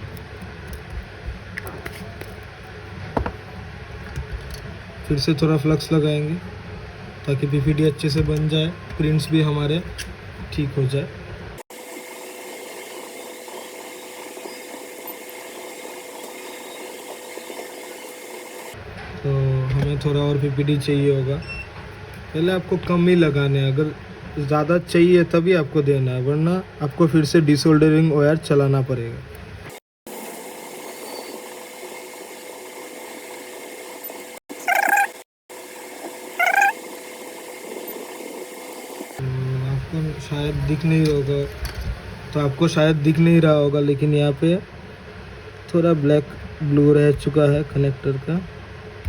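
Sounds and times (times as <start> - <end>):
cat meowing: 34.7 - 35.2, 36.4 - 36.8.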